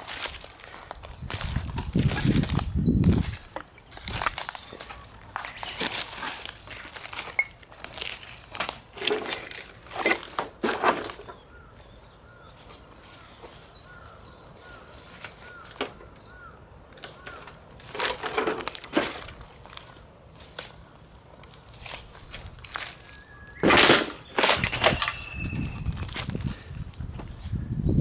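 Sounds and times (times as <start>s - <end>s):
footsteps crunching on a path: 0.0s - 15.6s, 17.2s - 27.7s
bird chirping: 2.5s - 5.7s, 11.2s - 16.6s, 19.2s - 28.0s.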